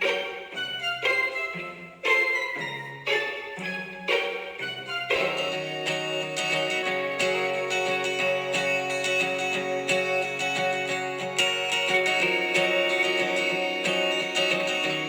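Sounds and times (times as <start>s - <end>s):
strummed acoustic guitar music: 4.4s - 15.0s.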